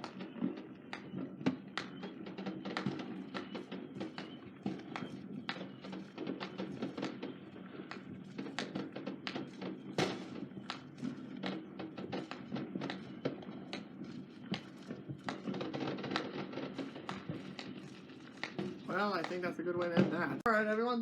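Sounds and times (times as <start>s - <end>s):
firework bang: 0.0s - 20.5s
fireworks popping and crackling: 0.0s - 21.0s.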